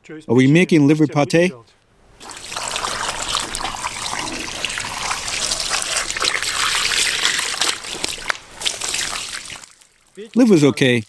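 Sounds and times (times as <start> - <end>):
water trickling and splashing: 2.2 - 11.0.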